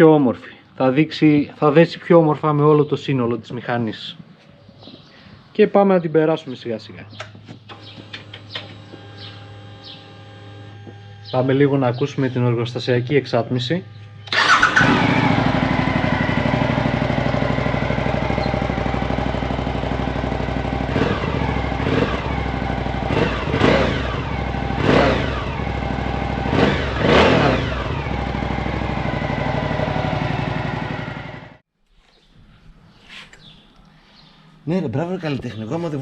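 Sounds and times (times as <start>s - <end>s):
motorcycle engine idling and revving: 7.2s - 11.3s, 13.9s - 31.6s.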